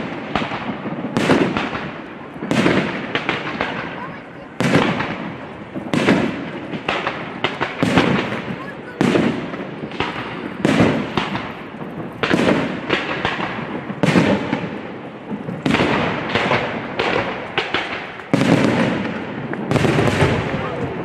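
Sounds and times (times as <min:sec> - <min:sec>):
fireworks bangs with crackle: 0:00.0 - 0:21.0.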